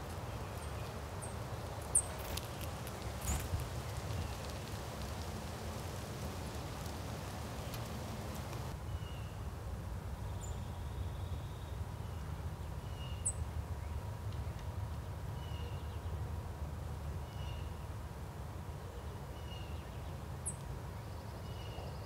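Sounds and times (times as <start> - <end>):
faint clicks and rustles: 0.0 - 8.8
low wind rumble: 0.0 - 9.0.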